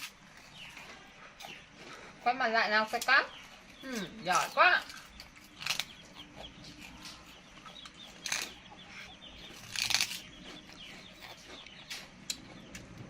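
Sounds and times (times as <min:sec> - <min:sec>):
monkey crunching rice cake: 0:02.8 - 0:13.0.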